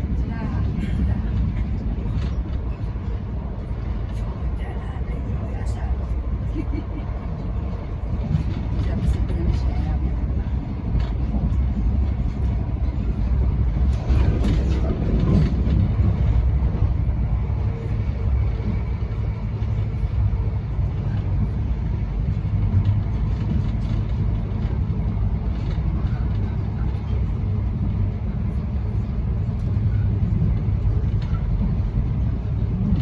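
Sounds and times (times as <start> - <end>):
train carriage rattles: 0.0 - 33.0
train rumble inside carriage: 0.0 - 33.0.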